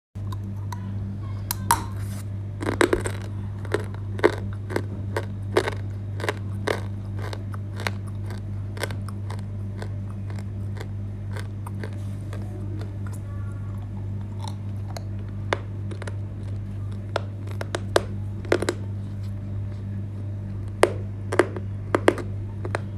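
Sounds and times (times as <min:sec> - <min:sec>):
low electrical hum: 0:00.2 - 0:22.9
dry clay crunching and cracking: 0:01.5 - 0:22.9.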